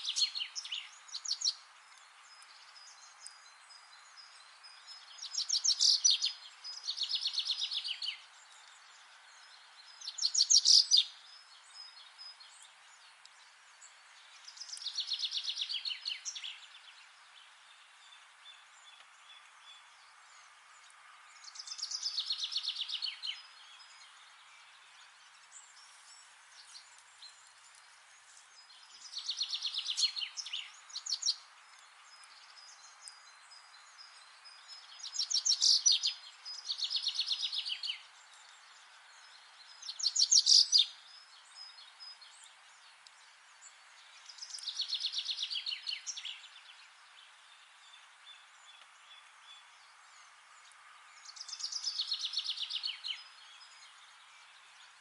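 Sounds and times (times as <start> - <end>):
background hiss: 0.0 - 55.0
songbird trilling: 5.2 - 8.2, 10.0 - 11.1, 39.9 - 40.9.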